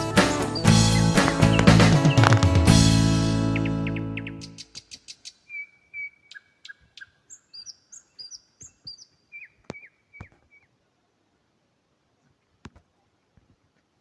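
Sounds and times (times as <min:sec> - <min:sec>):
bird-like chirps: 0:00.3 - 0:02.5, 0:03.5 - 0:10.8.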